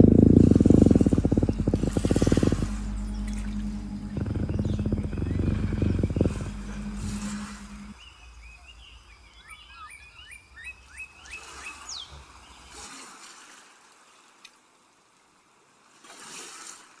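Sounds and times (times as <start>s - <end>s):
low rumble: 0.0s - 10.5s
birds chirping: 0.0s - 12.6s.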